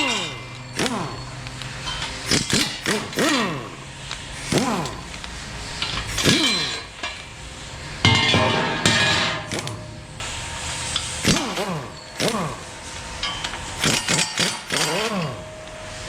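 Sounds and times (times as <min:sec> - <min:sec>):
metal clinks: 0:00.0 - 0:03.3, 0:08.0 - 0:10.2
power ratchet bursts: 0:00.0 - 0:08.1, 0:09.3 - 0:16.0.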